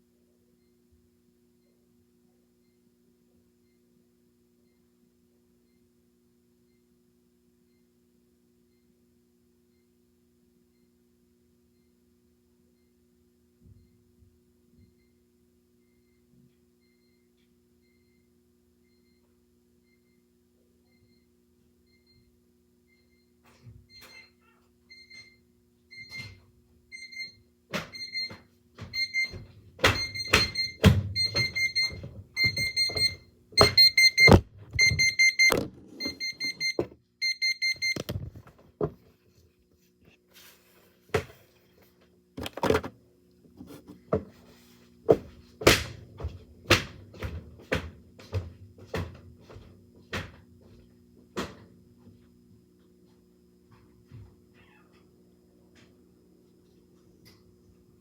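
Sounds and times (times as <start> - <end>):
alarm clock beeping: 26.9 - 38.1
knocks and thumps: 28.8 - 36.2.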